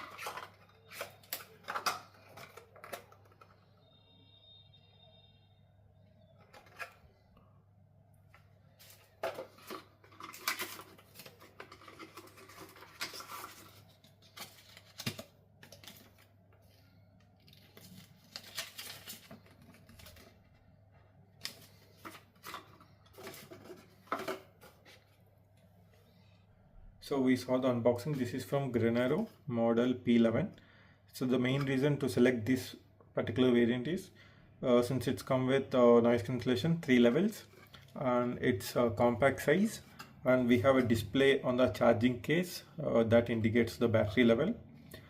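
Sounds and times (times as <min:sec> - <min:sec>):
small box being unpacked: 0:00.0 - 0:03.6, 0:08.8 - 0:20.6, 0:21.4 - 0:25.2.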